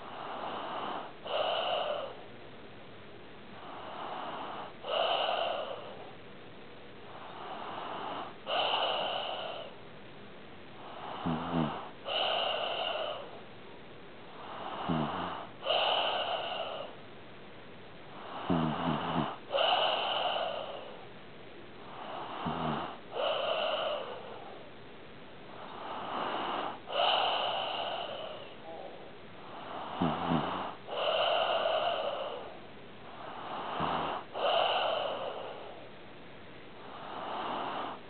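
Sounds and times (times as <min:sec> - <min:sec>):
pet snoring: 0:00.0 - 0:02.3, 0:03.6 - 0:06.2, 0:07.1 - 0:09.8, 0:10.8 - 0:13.5, 0:14.3 - 0:17.0, 0:18.1 - 0:21.0, 0:21.8 - 0:24.7, 0:25.5 - 0:36.0, 0:36.8 - 0:38.0.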